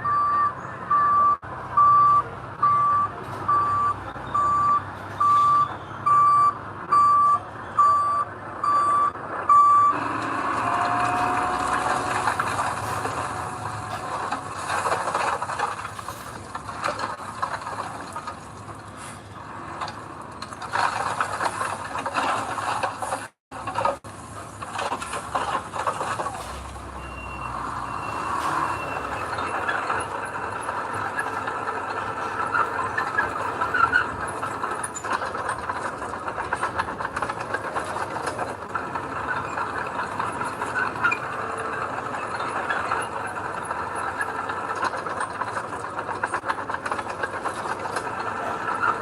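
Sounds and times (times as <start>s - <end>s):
truck reversing alarm beeping: 0.0s - 15.9s, 24.8s - 49.0s
heavy machinery engine: 0.0s - 49.0s.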